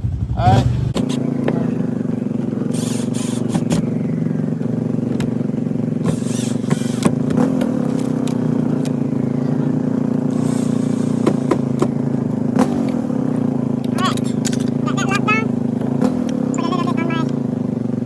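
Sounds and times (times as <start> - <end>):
engine humming: 0.0 - 18.0
sharp clicks and knocks: 13.8 - 14.8.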